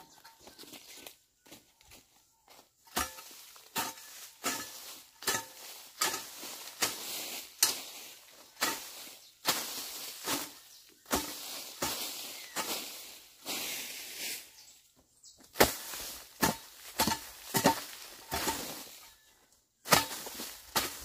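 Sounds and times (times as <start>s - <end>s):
hoe chopping into soil: 2.9s - 7.9s, 8.6s - 12.7s, 15.6s - 18.9s, 19.8s - 21.0s.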